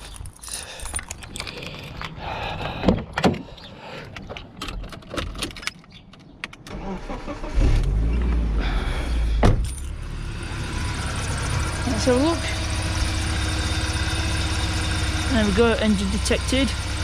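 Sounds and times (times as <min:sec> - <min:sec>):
keys jangling: 0:00.0 - 0:02.2, 0:04.0 - 0:06.4, 0:09.6 - 0:10.0
car engine cranking: 0:00.0 - 0:17.0
car door clicks and knocks: 0:02.8 - 0:03.5.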